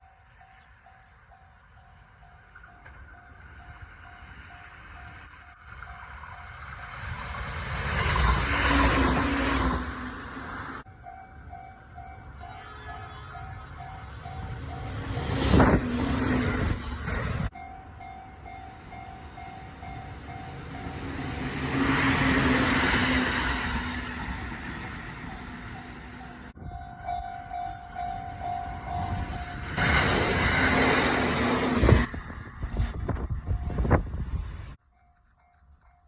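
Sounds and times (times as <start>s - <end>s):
electric train running past: 0.0s - 36.0s
level-crossing bell ringing: 25.8s - 29.6s.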